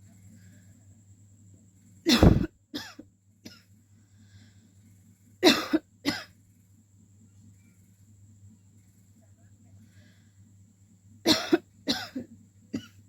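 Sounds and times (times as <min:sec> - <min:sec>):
woman coughing: 0:02.1 - 0:03.0, 0:05.4 - 0:06.3, 0:11.3 - 0:12.2.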